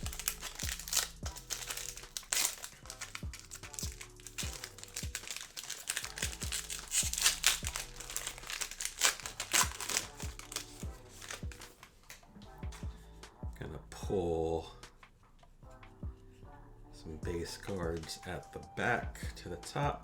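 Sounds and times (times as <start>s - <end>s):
plastic packaging crinkling: 0.0s - 12.2s
background music with beat: 0.0s - 20.0s.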